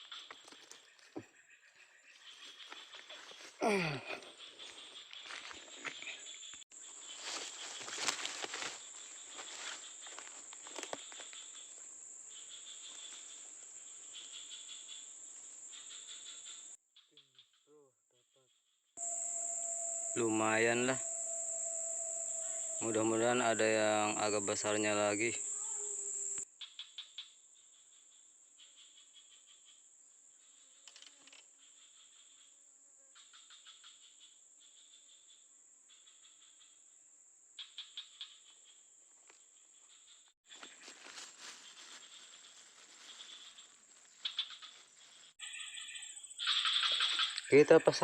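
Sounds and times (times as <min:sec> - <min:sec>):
crickets trilling: 0:03.6 - 0:16.7, 0:19.0 - 0:26.5, 0:40.5 - 0:48.0
lower pulsing chirping: 0:19.0 - 0:26.4.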